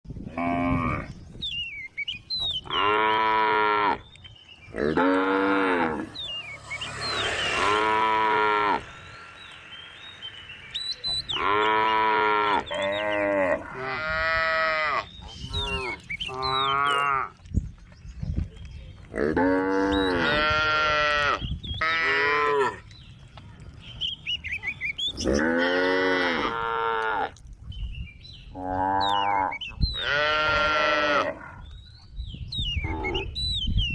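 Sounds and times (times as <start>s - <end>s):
cows mooing: 2.6s - 4.0s, 4.7s - 6.4s, 7.6s - 9.0s, 11.2s - 17.3s, 19.2s - 22.8s, 25.2s - 27.3s, 28.6s - 31.6s.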